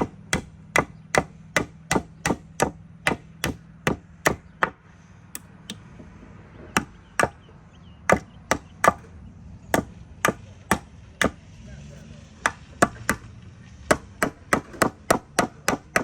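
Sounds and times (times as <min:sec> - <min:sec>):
hammer striking nails in wood: 0:00.0 - 0:04.8, 0:13.9 - 0:16.0.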